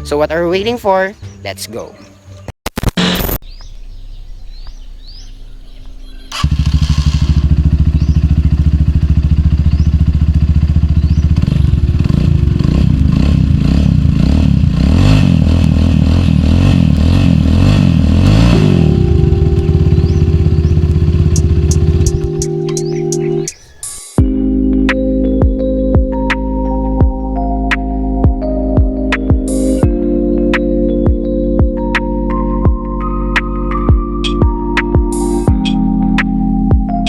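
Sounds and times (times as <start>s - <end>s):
birds chirping: 0.0s - 2.5s, 3.4s - 14.4s, 16.1s - 25.1s
motorcycle engine revving: 2.9s - 23.8s.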